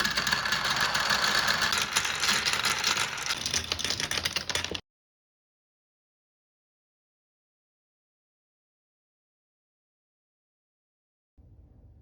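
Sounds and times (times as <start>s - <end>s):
marbles rattling down wooden track: 0.0s - 4.8s.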